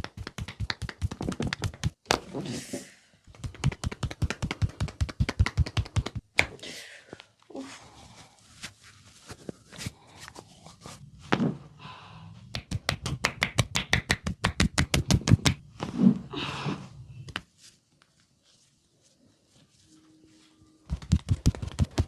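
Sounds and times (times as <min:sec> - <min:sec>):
hands slapping a head: 0:00.0 - 0:02.3, 0:03.3 - 0:06.6, 0:12.5 - 0:15.6, 0:20.9 - 0:22.0.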